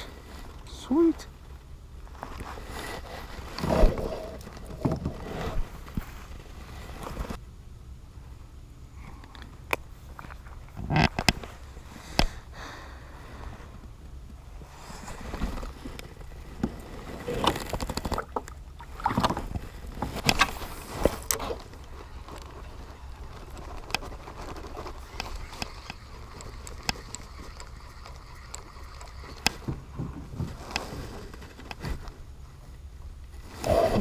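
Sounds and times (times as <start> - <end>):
steady low hum: 0.0 - 34.0
gear knocking and rustling: 13.6 - 33.5.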